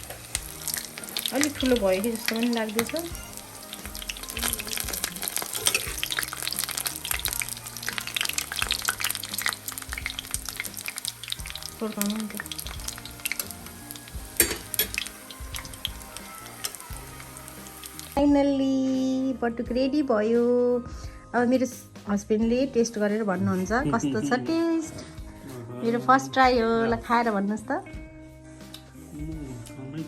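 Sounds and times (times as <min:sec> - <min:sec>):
fritters sizzling in oil: 0:00.0 - 0:18.2.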